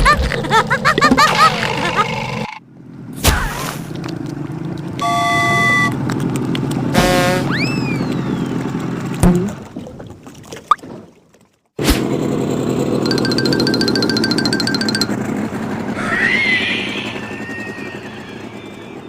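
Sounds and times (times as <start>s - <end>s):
short horn toot: 7.0s - 7.6s
falling whistle glide: 7.4s - 8.6s, 16.0s - 19.0s.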